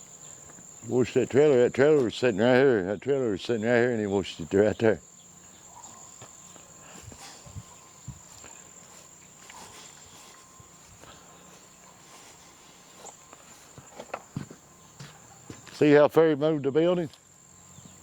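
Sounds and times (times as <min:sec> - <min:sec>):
insects chirring: 0:00.0 - 0:18.0
soft footsteps on ground: 0:05.3 - 0:16.0.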